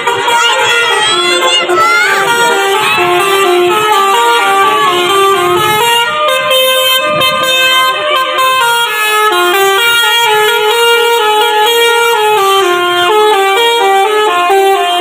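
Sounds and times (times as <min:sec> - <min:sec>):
bus musical horn playing tune: 0:00.0 - 0:15.0.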